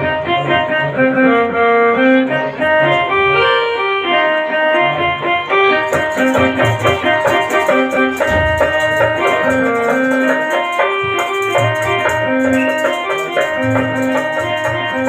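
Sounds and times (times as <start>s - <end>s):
organ-toned keyboard melody: 0.0s - 15.0s
light rhythmic ticking: 2.3s - 15.0s.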